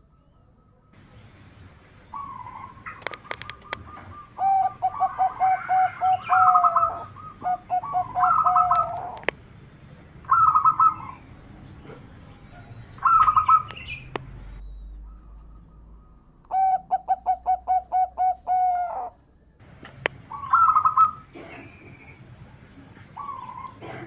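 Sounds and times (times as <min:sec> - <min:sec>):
doves cooing: 0:00.0 - 0:09.4, 0:10.1 - 0:24.0
sharp clicks: 0:03.0 - 0:03.9, 0:13.6 - 0:15.6.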